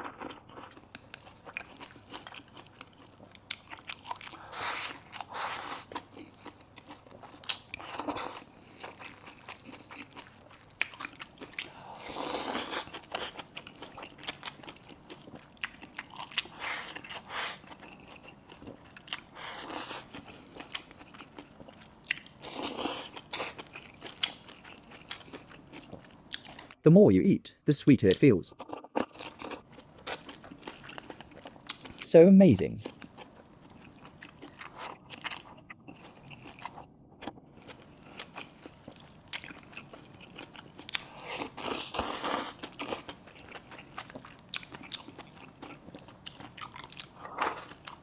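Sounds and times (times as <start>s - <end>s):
person chewing food: 0.0s - 26.8s, 28.5s - 32.0s, 32.8s - 48.0s.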